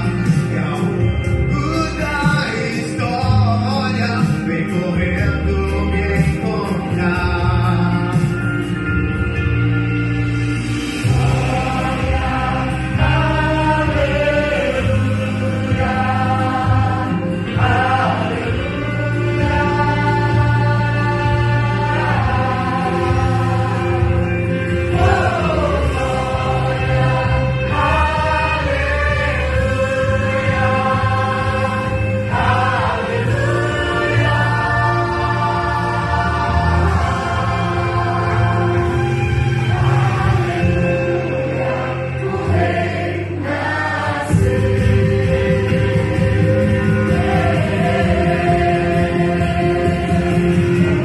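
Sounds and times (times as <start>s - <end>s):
steady low bass: 0.0s - 51.0s
vocal group singing in harmony: 0.0s - 51.0s.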